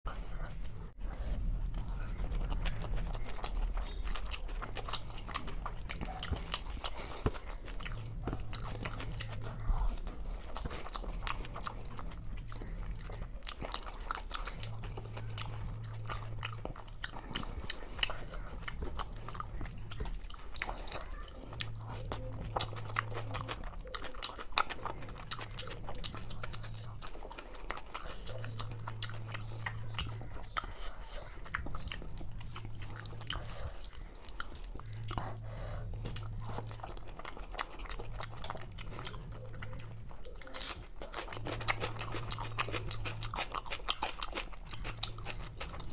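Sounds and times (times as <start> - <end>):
faint low hum: 0.0 - 45.9
chewing and crunching: 0.1 - 45.9.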